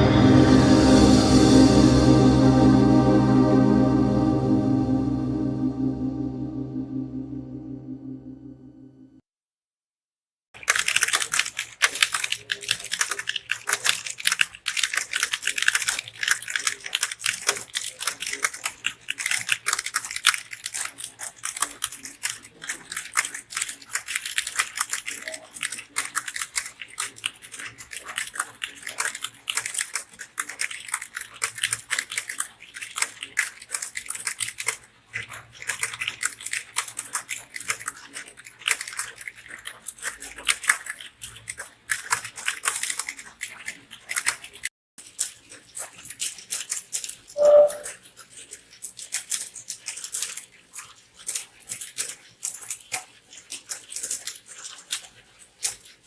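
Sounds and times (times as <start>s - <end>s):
fast typing on keyboard: 10.6s - 46.6s.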